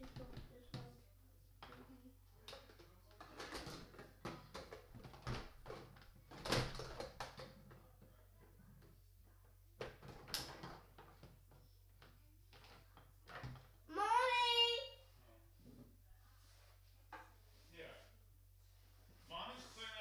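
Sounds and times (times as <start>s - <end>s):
toy parts and packaging handled: 1.6s - 7.8s.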